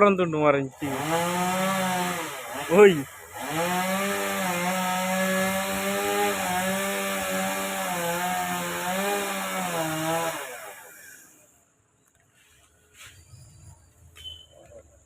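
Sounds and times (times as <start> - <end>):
chainsaw cutting wood: 0.7 - 11.6.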